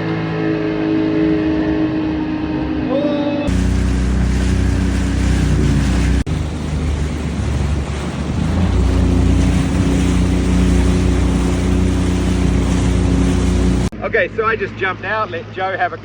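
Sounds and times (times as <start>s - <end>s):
watercraft engine running: 0.0s - 16.0s
wind on microphone: 3.5s - 13.9s
water rushing: 3.5s - 16.0s.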